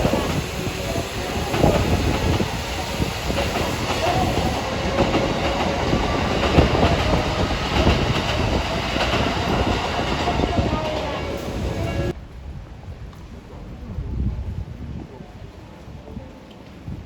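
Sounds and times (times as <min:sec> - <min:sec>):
train wheels clacking on rail joints: 0:00.0 - 0:12.1
train running rumble: 0:00.0 - 0:12.2.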